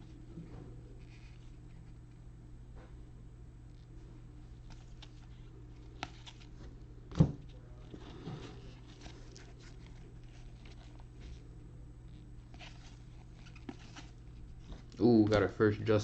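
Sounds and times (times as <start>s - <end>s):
steady low hum: 0.0s - 16.0s
cards rustling on a table: 4.6s - 11.5s, 12.1s - 15.5s.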